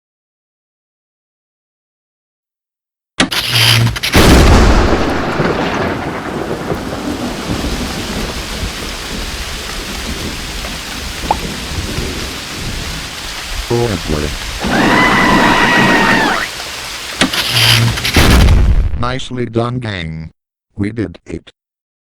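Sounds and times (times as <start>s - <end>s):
steady rain: 3.3s - 18.9s
thunderclap: 3.3s - 19.4s.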